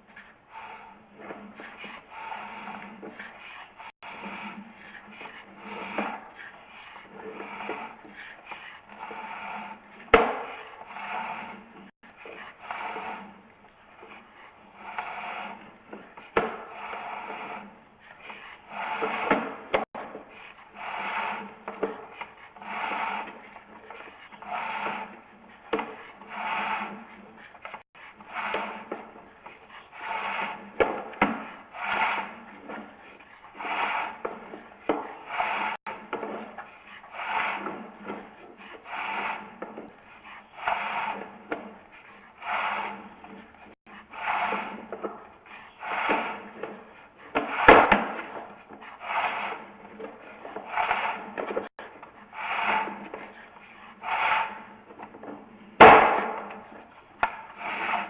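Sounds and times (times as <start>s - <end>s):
cable scraping through pipe: 0.0s - 58.0s.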